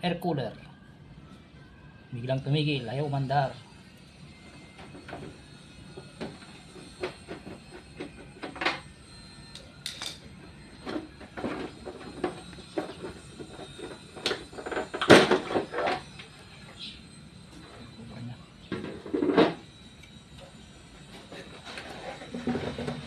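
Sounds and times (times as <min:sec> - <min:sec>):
parts clicking and scraping: 0:10.8 - 0:16.8.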